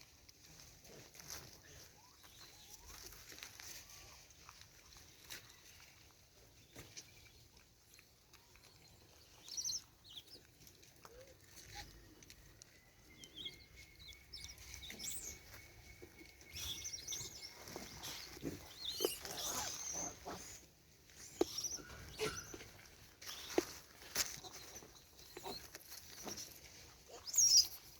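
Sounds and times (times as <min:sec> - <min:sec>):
small clicks and rustles: 0:00.0 - 0:20.0, 0:21.1 - 0:27.9
animal chirps and squeaks: 0:06.8 - 0:27.9.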